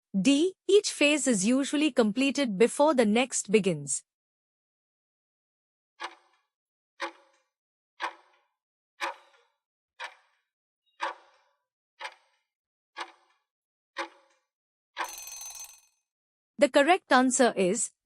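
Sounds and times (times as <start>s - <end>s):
clock ticking: 6.0s - 6.3s, 8.0s - 8.3s, 9.0s - 9.4s, 10.0s - 10.2s, 11.0s - 11.3s, 12.0s - 12.3s, 13.0s - 13.2s.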